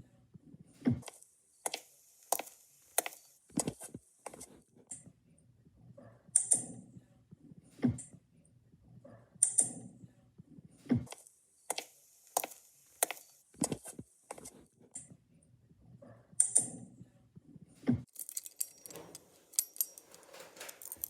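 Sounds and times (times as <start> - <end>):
mechanical clicks and knocks: 18.1 - 21.0.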